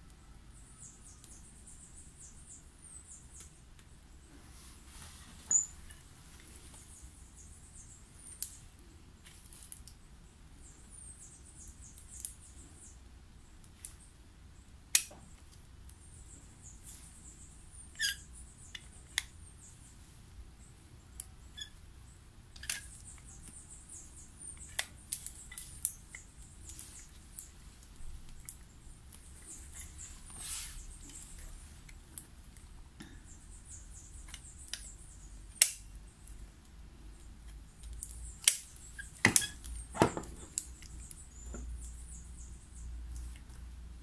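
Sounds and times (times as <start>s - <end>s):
sharp little clicks: 34.2s - 36.0s.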